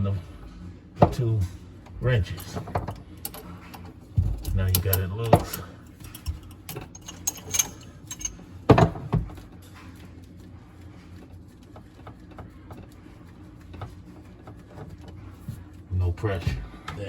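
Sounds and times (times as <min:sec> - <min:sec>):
metal wrenches clinking: 0:04.4 - 0:09.1.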